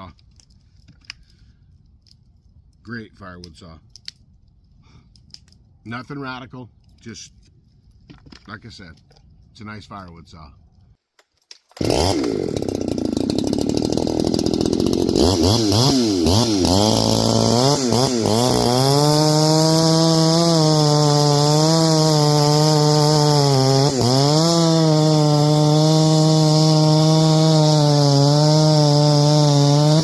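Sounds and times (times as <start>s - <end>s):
chainsaw revving: 11.8s - 30.0s.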